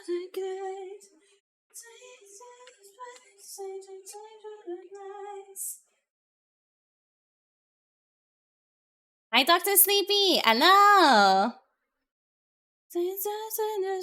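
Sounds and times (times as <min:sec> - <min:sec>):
person singing softly: 0:00.0 - 0:01.2, 0:01.8 - 0:05.8, 0:12.9 - 0:14.0.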